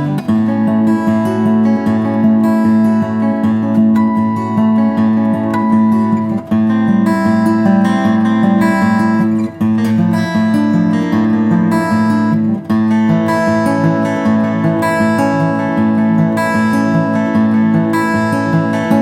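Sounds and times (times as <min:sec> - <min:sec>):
acoustic guitar playing: 0:00.0 - 0:19.0.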